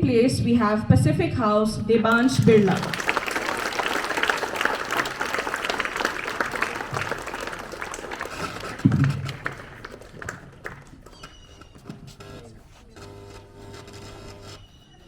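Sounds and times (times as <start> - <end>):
crowd applauding: 2.2 - 11.8.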